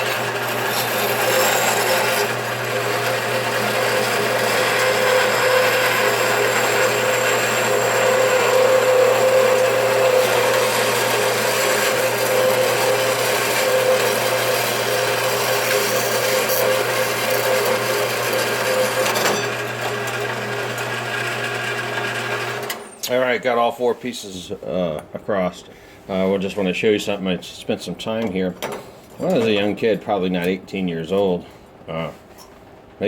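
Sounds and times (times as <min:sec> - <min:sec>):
band saw cutting metal: 0:00.0 - 0:23.1
band saw running: 0:00.0 - 0:23.1.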